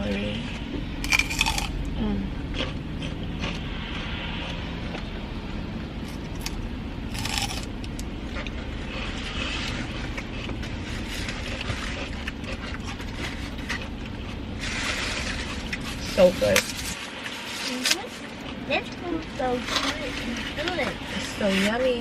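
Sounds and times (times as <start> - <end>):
steady low rumble: 0.0 - 22.0
celery being chewed: 1.0 - 1.8, 2.5 - 5.1, 6.1 - 16.9.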